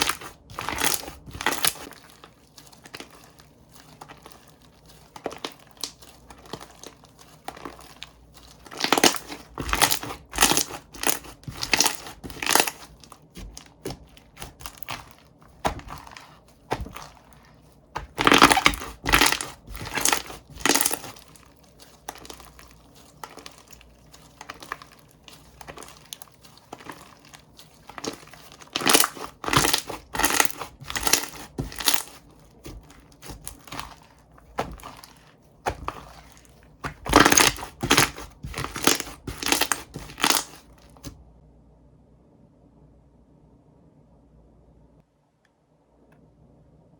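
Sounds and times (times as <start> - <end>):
slime crackling: 0.0 - 41.1
slime clicking and popping: 8.6 - 17.2, 18.0 - 22.5, 27.9 - 40.6.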